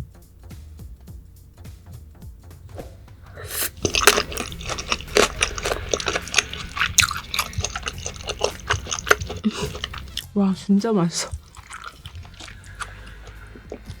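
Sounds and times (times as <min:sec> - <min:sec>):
mouth smacking and clicking: 0:03.3 - 0:10.2, 0:11.2 - 0:14.0
wet chewing mouth sounds: 0:03.3 - 0:10.3, 0:11.1 - 0:14.0.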